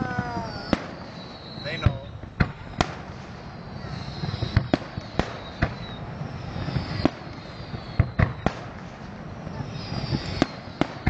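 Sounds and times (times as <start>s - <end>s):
falling firework whistles: 0.0s - 11.0s
firework bangs: 0.0s - 11.0s.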